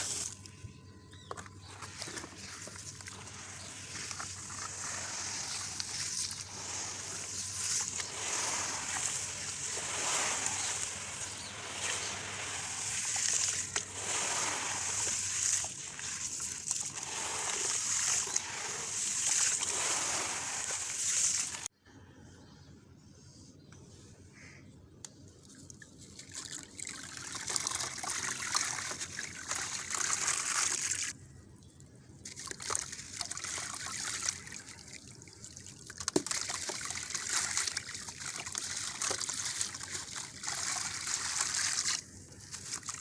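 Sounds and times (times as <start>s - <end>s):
stones crumbled in water: 1.4s - 21.7s, 35.8s - 43.0s.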